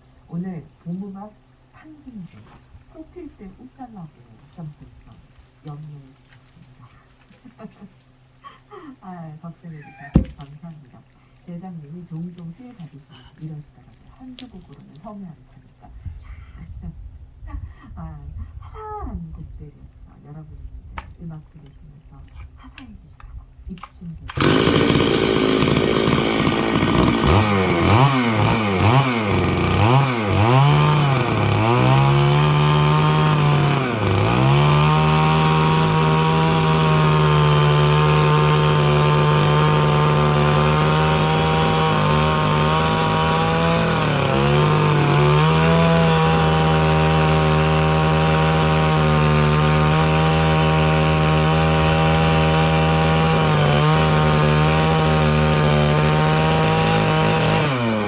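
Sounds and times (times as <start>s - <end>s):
chainsaw revving and cutting wood: 10.1s - 10.6s, 24.3s - 58.0s.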